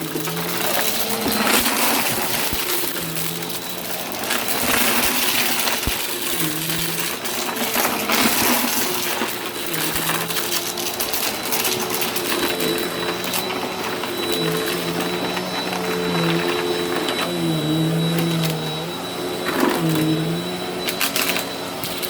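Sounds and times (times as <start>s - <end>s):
debris rattling up vacuum nozzle: 0.0s - 22.0s
vacuum cleaner running: 0.0s - 22.0s.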